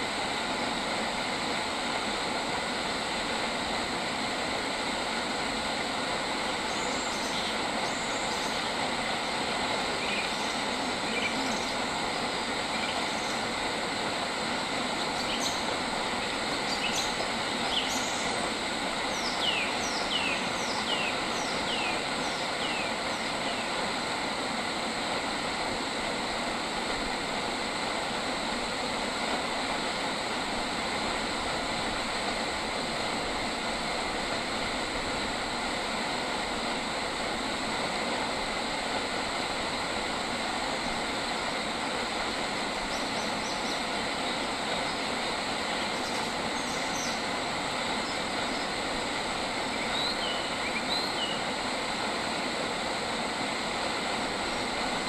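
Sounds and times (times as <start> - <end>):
nature ambience hum and hiss: 0.0 - 55.0
bird calling: 6.7 - 13.4, 15.1 - 18.4.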